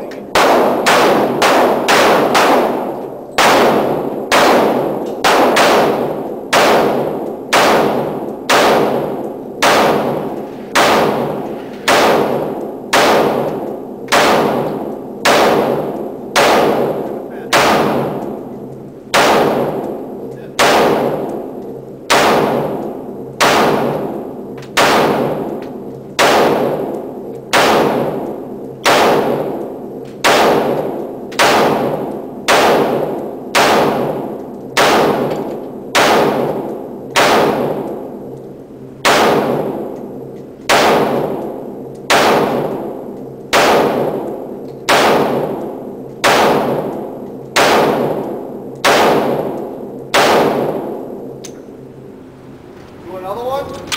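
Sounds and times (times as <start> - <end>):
sharp bangs with ringing echo: 0.3 - 38.3, 39.0 - 51.4.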